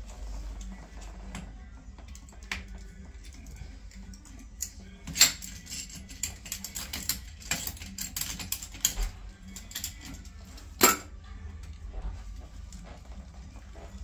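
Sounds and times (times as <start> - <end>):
hand tools clicking and knocking: 4.6 - 10.2.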